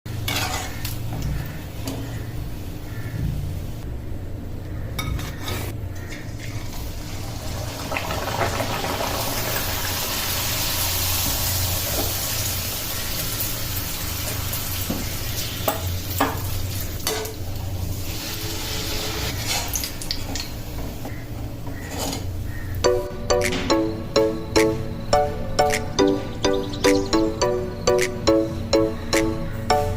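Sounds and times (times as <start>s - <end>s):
deep-frying sizzle: 6.5s - 20.9s.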